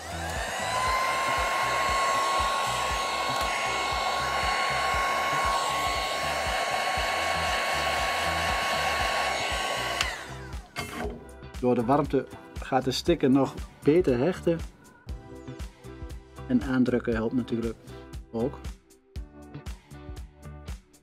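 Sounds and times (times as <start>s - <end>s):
heat gun blowing with motor whine: 0.0s - 10.7s.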